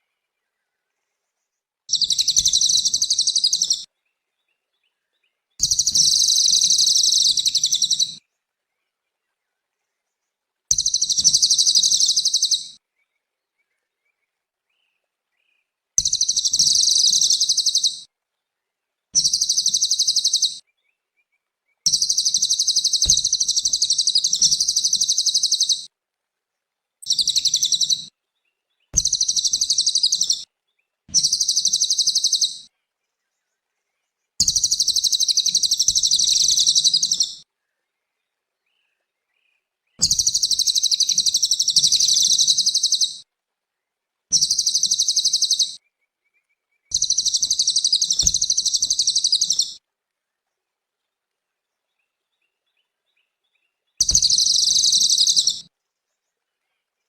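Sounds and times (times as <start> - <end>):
bird twittering: 1.9 - 3.9, 5.6 - 8.2, 10.7 - 12.8, 16.0 - 18.0, 19.2 - 20.6, 21.9 - 25.9, 27.0 - 28.1, 29.0 - 30.4, 31.1 - 32.7, 34.4 - 37.4, 40.0 - 43.2, 44.3 - 45.8, 46.9 - 49.8, 54.0 - 55.7.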